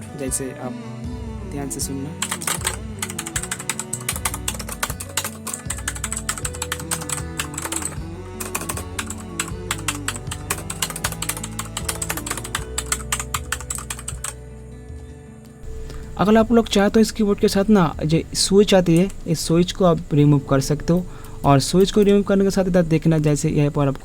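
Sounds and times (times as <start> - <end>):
clicky keyboard typing: 2.2 - 14.4.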